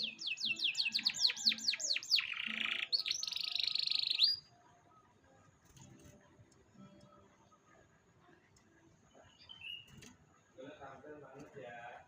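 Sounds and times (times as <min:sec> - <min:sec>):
canary singing: 0:00.0 - 0:04.6, 0:09.2 - 0:10.1.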